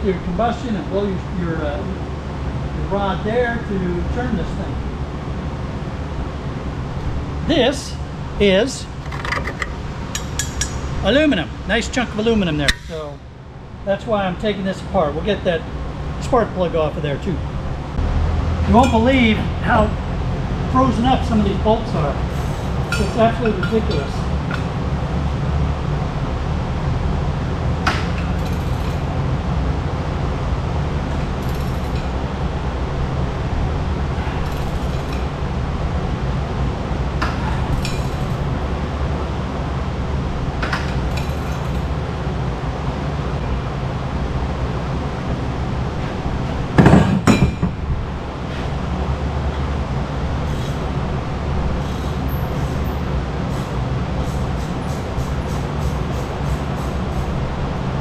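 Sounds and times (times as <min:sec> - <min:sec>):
steady low hum: 0:00.0 - 0:58.0
metal tools clinking: 0:09.0 - 0:11.0, 0:40.9 - 0:41.9.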